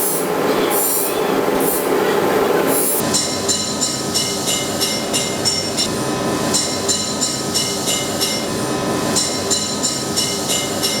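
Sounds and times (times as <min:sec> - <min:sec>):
hammer striking metal anvil: 0:03.0 - 0:05.9, 0:06.5 - 0:08.5, 0:09.1 - 0:11.0.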